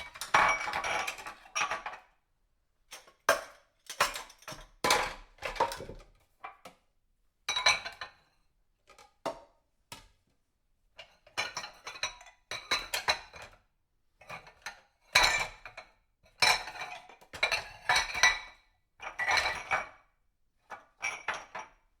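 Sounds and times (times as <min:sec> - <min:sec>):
dishes and cutlery clattering: 0:00.0 - 0:02.1, 0:03.0 - 0:06.1.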